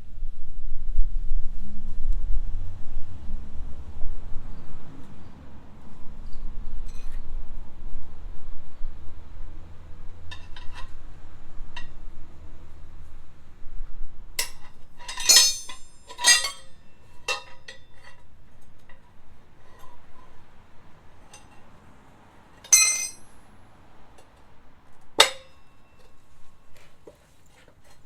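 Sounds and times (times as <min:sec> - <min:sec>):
metal hand tools clinking: 0:14.4 - 0:18.2, 0:22.6 - 0:23.3.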